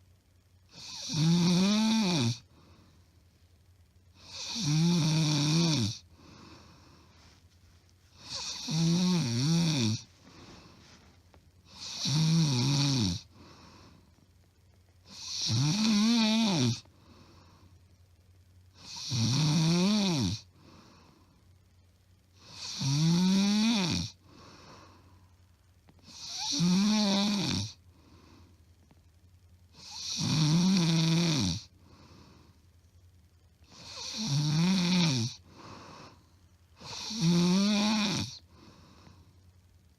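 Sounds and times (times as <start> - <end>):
woman snoring loudly: 0.7 - 2.4, 4.2 - 6.0, 8.2 - 10.1, 11.7 - 13.4, 15.1 - 16.9, 18.8 - 20.5, 22.4 - 24.2, 26.1 - 27.8, 29.8 - 31.7, 33.7 - 36.2, 36.8 - 38.4
soft breaths: 2.4 - 4.0, 6.0 - 12.1, 13.2 - 15.1, 16.8 - 18.2, 20.4 - 21.9, 24.1 - 26.6, 27.7 - 29.1, 31.6 - 33.0, 35.4 - 36.8, 38.4 - 39.8.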